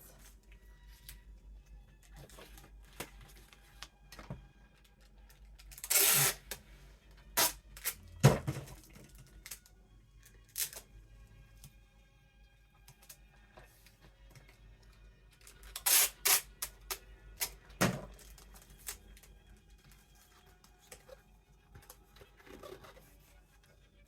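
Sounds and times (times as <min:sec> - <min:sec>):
packing tape ripping off roll: 0:05.6 - 0:06.6, 0:07.4 - 0:08.0, 0:10.5 - 0:10.8, 0:15.6 - 0:17.6.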